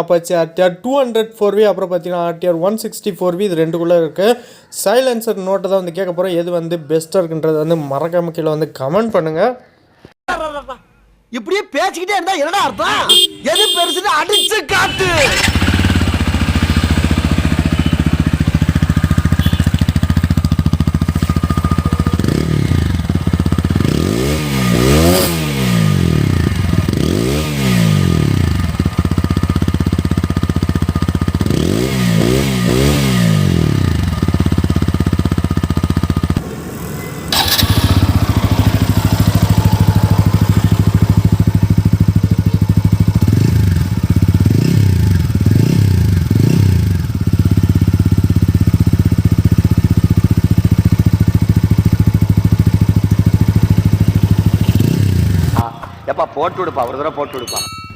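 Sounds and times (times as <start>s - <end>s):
motorcycle idling and revving: 14.8s - 57.9s.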